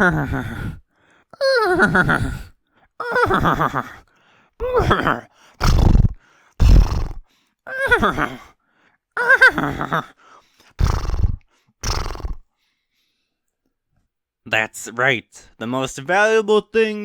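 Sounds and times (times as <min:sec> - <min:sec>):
horse snorts: 0:04.8 - 0:07.2, 0:10.8 - 0:12.5.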